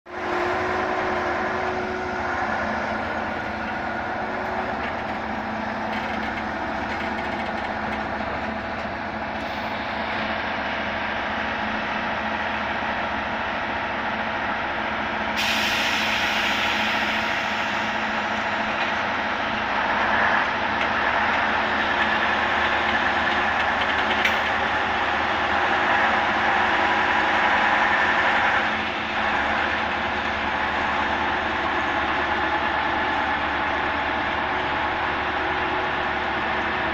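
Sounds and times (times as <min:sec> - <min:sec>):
diesel track machinery running: 0:00.1 - 0:36.9
hiss-like rushing noise: 0:15.4 - 0:18.6.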